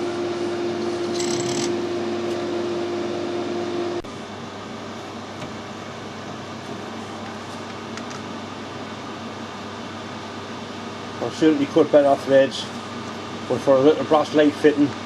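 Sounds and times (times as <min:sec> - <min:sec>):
metal lathe humming: 0:00.0 - 0:04.0.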